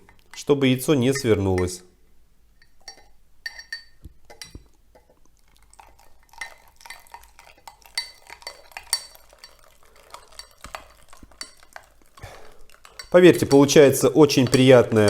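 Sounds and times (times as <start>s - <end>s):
spoon clinking in a cup: 2.6s - 4.7s, 5.8s - 15.0s.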